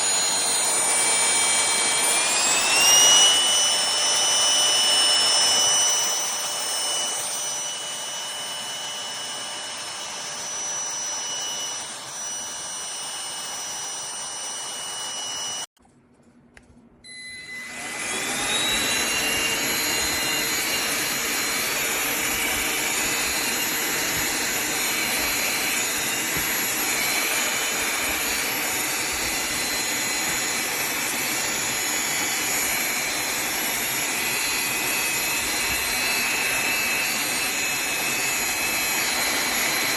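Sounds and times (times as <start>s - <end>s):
handheld vacuum motor whine: 0.0s - 15.7s, 17.1s - 39.9s.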